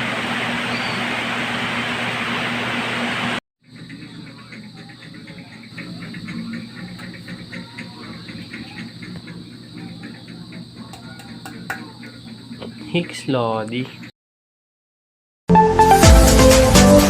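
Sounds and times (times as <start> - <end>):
crickets chirping: 3.6 - 14.1.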